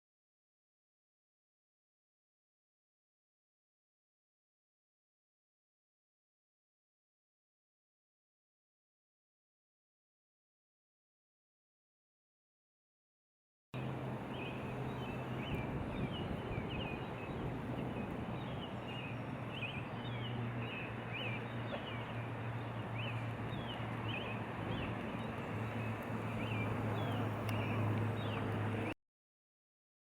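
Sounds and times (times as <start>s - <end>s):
small birds chirping: 13.8s - 29.0s.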